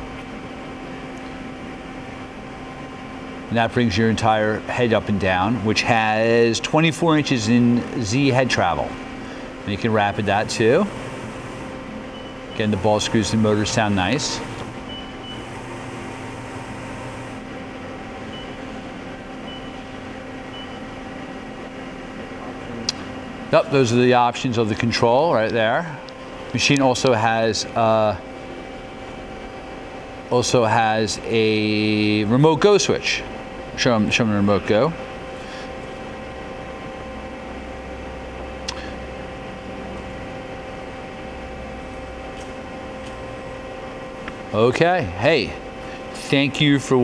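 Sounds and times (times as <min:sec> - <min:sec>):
machine hum with steady tones: 0:00.0 - 0:47.0.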